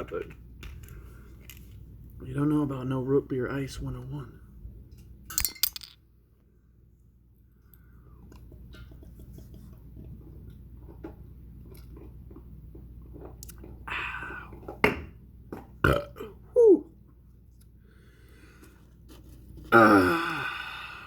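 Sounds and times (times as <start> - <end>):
man burping: 15.8 - 16.4, 19.7 - 21.0
rasping breath: 19.8 - 21.0.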